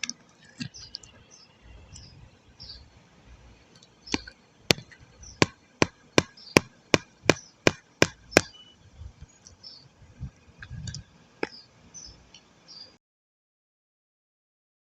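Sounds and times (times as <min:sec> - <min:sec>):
sharp crisp knocks: 0:04.1 - 0:08.6.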